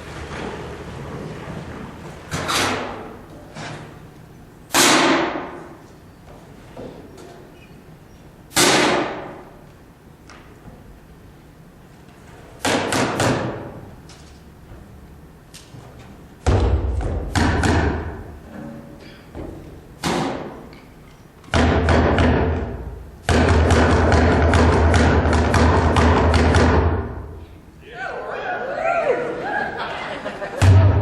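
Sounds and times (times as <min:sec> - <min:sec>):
deep booming drum hits: 0:30.6 - 0:31.0
percussion hits: 0:30.6 - 0:31.0.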